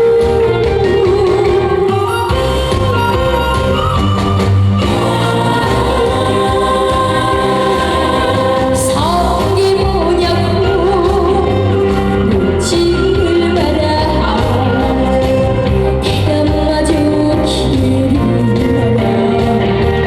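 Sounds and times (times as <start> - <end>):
loud backing track: 0.0 - 20.0
woman singing with vibrato: 4.8 - 20.0.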